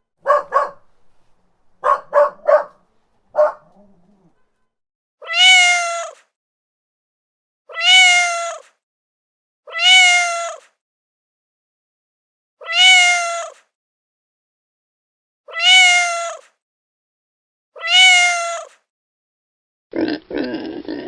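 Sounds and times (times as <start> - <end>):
dog barking: 0.2 - 0.9, 1.8 - 4.4
cat meowing: 5.2 - 6.2, 7.7 - 8.6, 9.7 - 10.7, 12.6 - 13.6, 15.5 - 16.4, 17.8 - 18.8.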